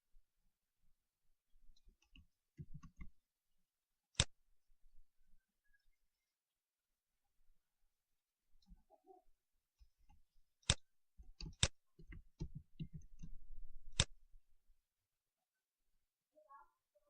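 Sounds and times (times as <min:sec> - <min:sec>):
computer mouse and keyboard clicks: 0:02.0 - 0:03.1, 0:10.6 - 0:14.2.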